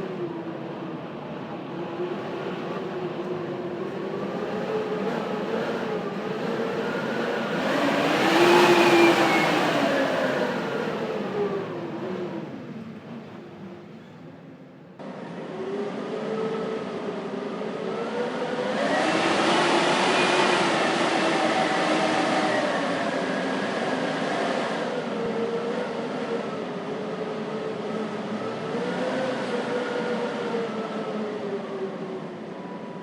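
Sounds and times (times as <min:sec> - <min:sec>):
blizzard wind howling: 0:00.0 - 0:33.0.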